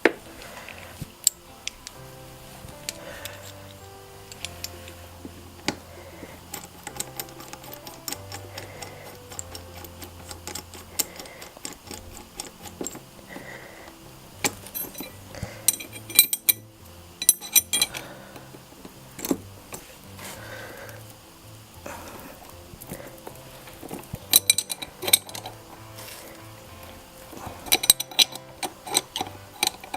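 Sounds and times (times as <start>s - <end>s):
background music: 0.0s - 29.9s
metal tool clicks and clinks: 5.7s - 13.1s, 14.4s - 16.6s, 17.2s - 18.0s, 23.2s - 25.6s, 27.6s - 29.9s.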